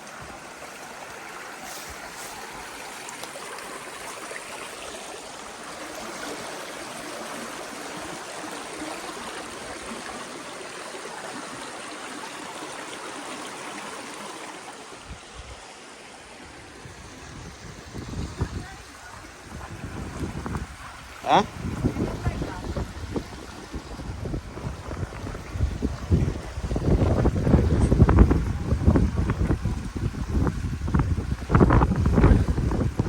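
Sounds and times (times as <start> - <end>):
stream flowing: 0.0 - 33.0.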